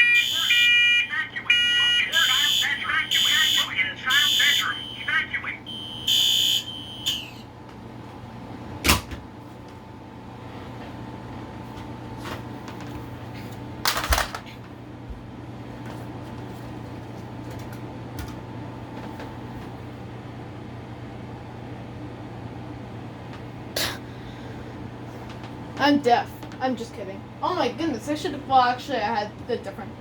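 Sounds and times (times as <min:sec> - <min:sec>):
smoke alarm beeping: 0:00.0 - 0:07.5.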